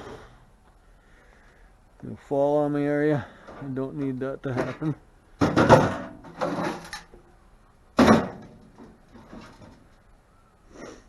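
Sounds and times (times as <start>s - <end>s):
loud clunk: 5.4s - 7.0s, 8.0s - 9.7s.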